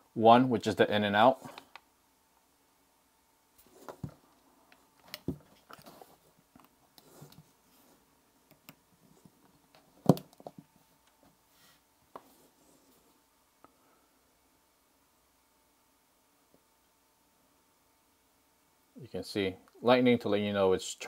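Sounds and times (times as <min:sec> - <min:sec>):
cables clicking and tapping on desk: 0:03.6 - 0:07.5, 0:08.4 - 0:11.3.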